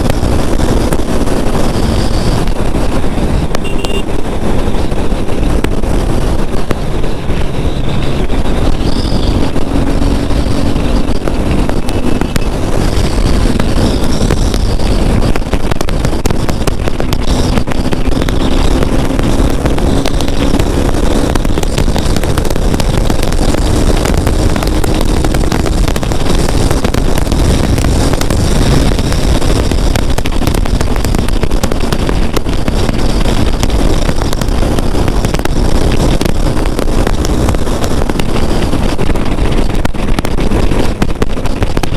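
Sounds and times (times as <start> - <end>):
motorcycle engine running hard: 0.0 - 41.9
wind rush on microphone: 0.0 - 41.9.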